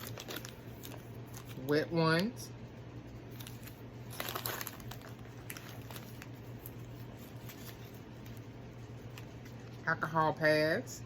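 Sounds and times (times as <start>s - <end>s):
plastic packaging crinkling: 0.0s - 1.7s, 3.3s - 9.6s
steady low hum: 0.0s - 11.0s.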